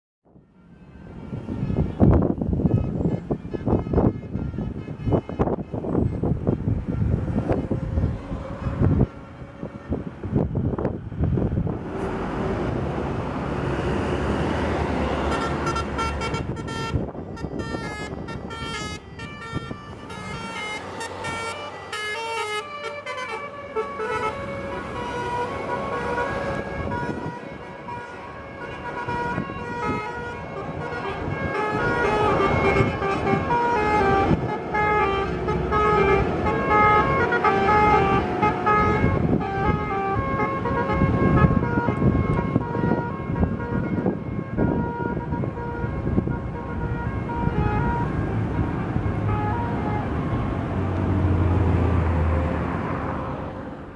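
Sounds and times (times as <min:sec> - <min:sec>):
bus running noise: 0:00.3 - 0:53.9
multi-tone air horn tune: 0:01.6 - 0:07.6, 0:15.1 - 0:48.2, 0:48.8 - 0:50.2.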